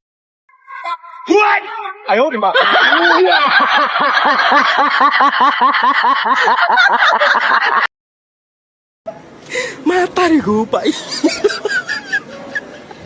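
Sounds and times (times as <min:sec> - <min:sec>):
person laughing: 0:02.5 - 0:07.9, 0:11.0 - 0:12.9.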